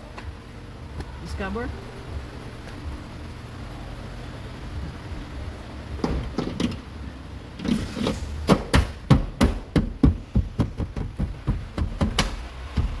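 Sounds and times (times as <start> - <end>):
plastic trim cover being knocked: 8.8 - 13.0.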